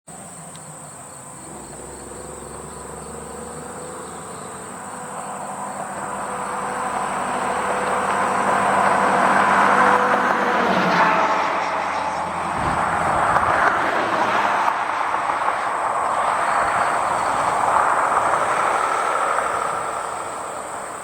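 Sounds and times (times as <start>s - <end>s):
high-pitched insect trill: 0.1s - 8.8s
vehicle approaching: 0.1s - 21.0s.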